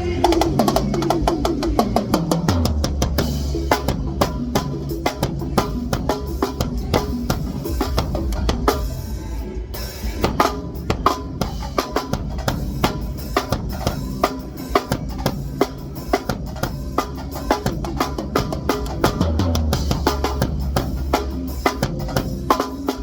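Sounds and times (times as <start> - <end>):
bass line: 0.0 - 13.0, 16.5 - 22.9
drum kit groove: 0.0 - 23.0.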